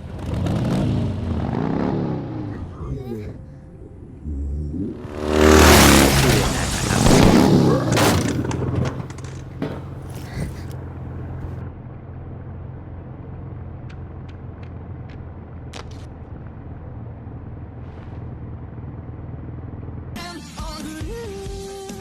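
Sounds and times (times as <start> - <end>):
low rumble: 2.2 - 15.4.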